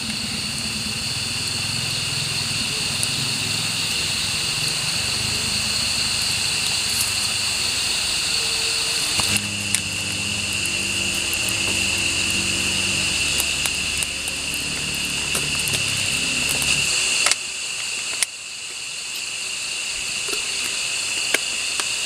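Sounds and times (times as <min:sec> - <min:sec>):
low steady hum: 0:00.0 - 0:18.7
insect chorus drone: 0:00.0 - 0:22.0.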